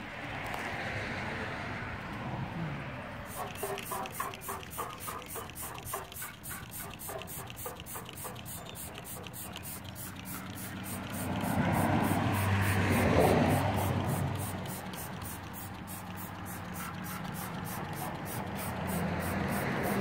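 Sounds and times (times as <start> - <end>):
spray bottle squirting: 3.3 - 20.0
rushing noise with low hum: 10.1 - 20.0.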